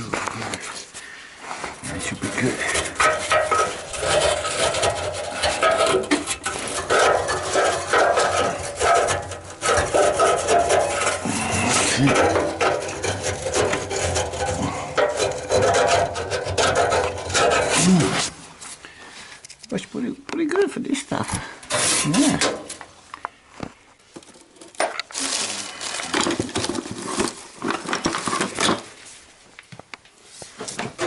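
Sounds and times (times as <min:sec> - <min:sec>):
brush scrubbing inside furnace: 0:01.5 - 0:18.8.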